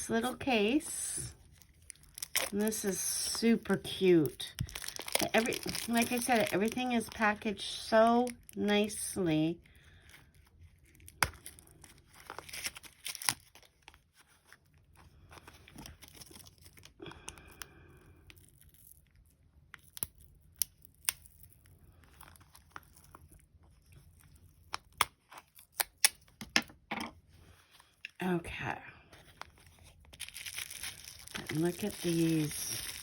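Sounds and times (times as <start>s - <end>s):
packaging rustling and crinkling: 0.2s - 7.5s, 10.2s - 17.0s, 29.2s - 33.0s.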